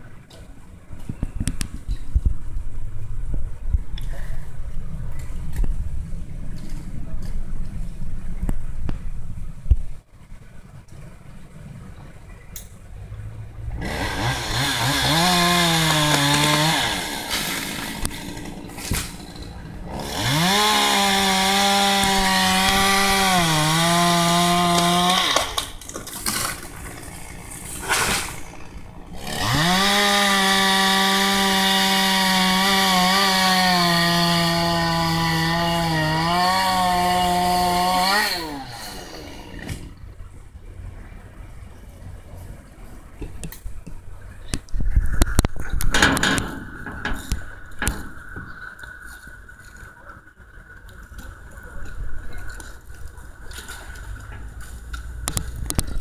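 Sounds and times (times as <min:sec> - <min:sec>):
chainsaw cutting wood: 0:13.8 - 0:40.0.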